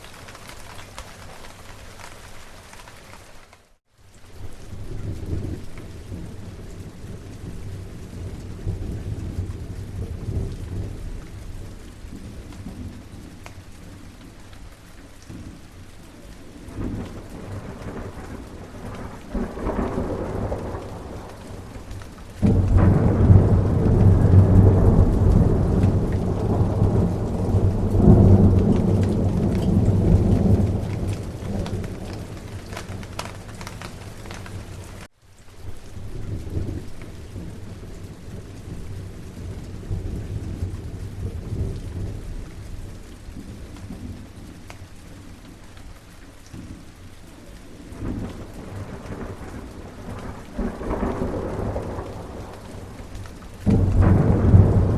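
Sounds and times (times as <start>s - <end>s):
steady rain: 0.0s - 54.9s
low thunder rumble: 4.5s - 14.1s, 16.4s - 35.1s, 47.8s - 54.9s
loud thunderclap: 16.7s - 34.7s, 48.0s - 54.9s.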